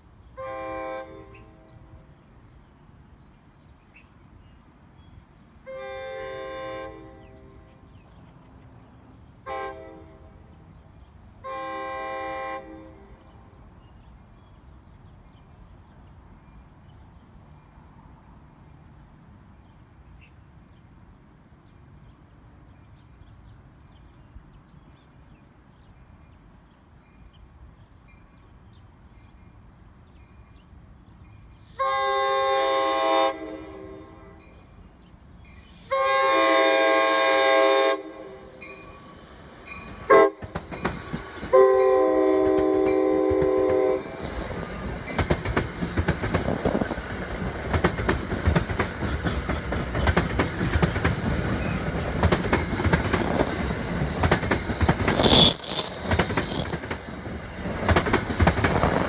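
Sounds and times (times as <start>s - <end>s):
train air horn blasts: 0.4s - 1.9s, 5.7s - 7.4s, 9.4s - 10.5s, 11.4s - 13.3s, 31.8s - 34.6s, 35.9s - 39.0s, 40.0s - 40.4s, 41.5s - 44.9s
train wheels rumbling: 34.7s - 59.0s
clickety-clack over rail joints: 39.7s - 59.0s.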